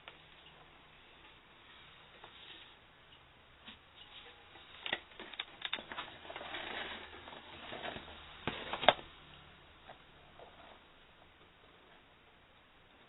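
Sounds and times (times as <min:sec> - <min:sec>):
rubbing or rustling: 0:03.7 - 0:09.1.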